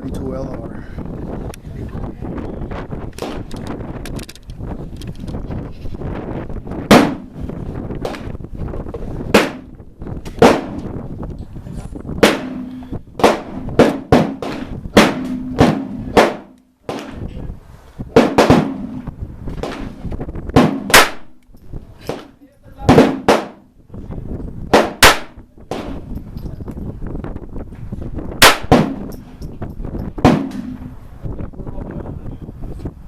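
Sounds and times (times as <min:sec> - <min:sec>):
pistol shots: 0:06.9 - 0:07.4, 0:09.3 - 0:09.7, 0:10.4 - 0:10.9, 0:12.2 - 0:17.2, 0:18.2 - 0:19.0, 0:20.6 - 0:21.4, 0:22.9 - 0:23.6, 0:24.7 - 0:26.1, 0:28.4 - 0:29.2, 0:30.2 - 0:30.9.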